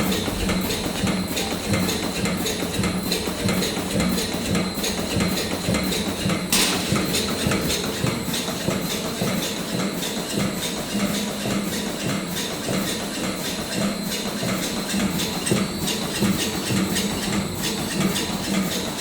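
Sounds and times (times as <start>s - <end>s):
machine humming: 0.0s - 8.2s
rhythmic mechanical clatter: 0.0s - 19.0s
sharp metallic clank: 6.5s - 7.5s.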